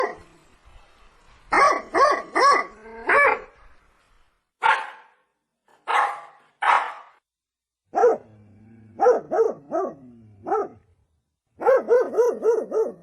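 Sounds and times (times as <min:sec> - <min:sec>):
dog barking: 0:01.5 - 0:03.5, 0:04.6 - 0:05.2, 0:05.8 - 0:07.2, 0:07.9 - 0:08.3, 0:09.0 - 0:10.8, 0:11.6 - 0:13.0.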